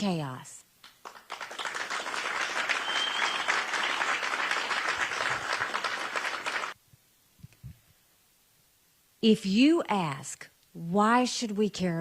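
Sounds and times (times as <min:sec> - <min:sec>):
audience applauding: 0:00.9 - 0:06.8.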